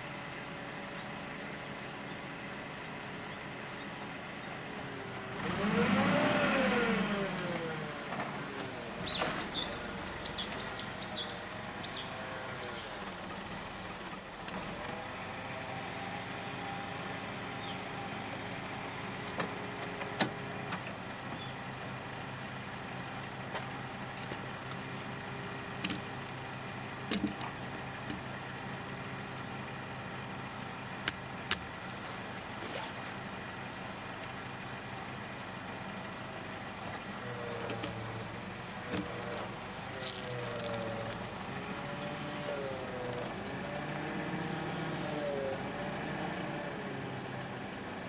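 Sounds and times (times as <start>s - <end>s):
chainsaw cutting logs: 37.7s - 43.4s.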